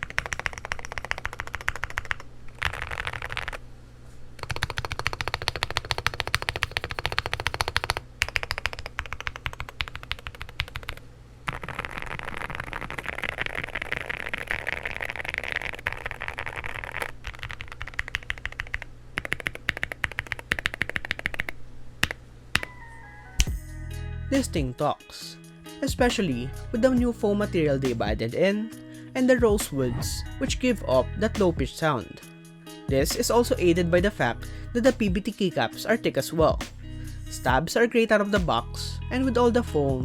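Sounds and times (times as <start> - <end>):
typing on mechanical keyboard: 0.0 - 3.6, 4.4 - 22.7.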